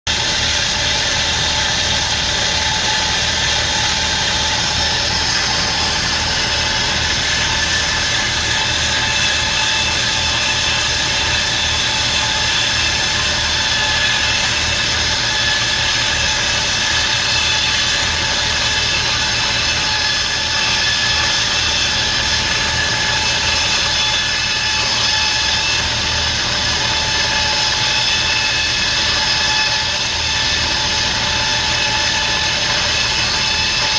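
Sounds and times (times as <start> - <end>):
wire saw cutting concrete: 0.1 - 33.9.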